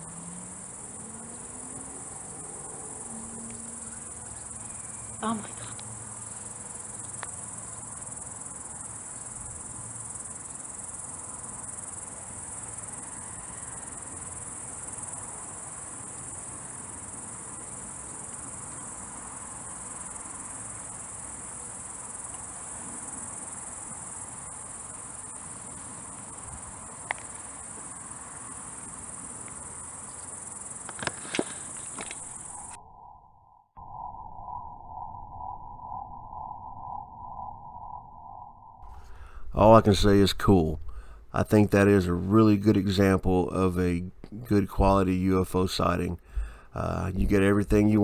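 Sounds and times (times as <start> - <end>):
crickets trilling: 0.0 - 33.2.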